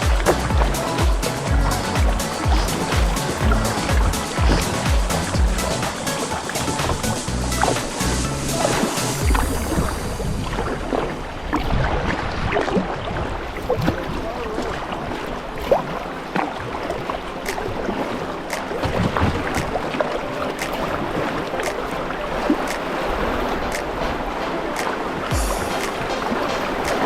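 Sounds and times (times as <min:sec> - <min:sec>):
river water rushing around kayak: 0:00.0 - 0:27.0
small splashes and clicks: 0:12.5 - 0:24.0.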